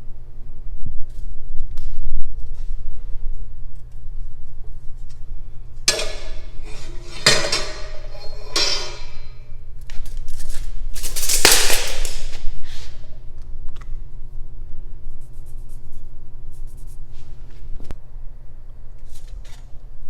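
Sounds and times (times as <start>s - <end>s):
low shop hum: 0.0s - 20.0s
steel pipe scraping and rustling: 5.9s - 9.5s.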